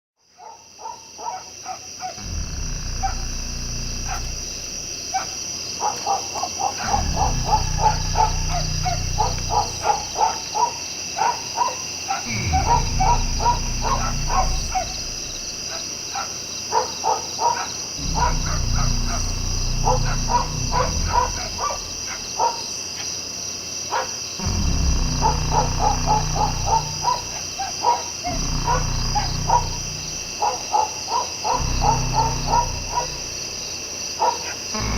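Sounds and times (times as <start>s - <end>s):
high-pitched whine: 2.2s - 5.1s, 6.8s - 10.3s, 12.3s - 15.8s, 18.0s - 22.4s, 24.4s - 27.7s, 28.3s - 30.6s, 31.6s - 33.7s
low rumbling drone: 2.2s - 5.2s, 6.8s - 10.5s, 12.3s - 16.0s, 18.0s - 22.4s, 24.4s - 27.7s, 28.3s - 30.7s, 31.6s - 33.8s.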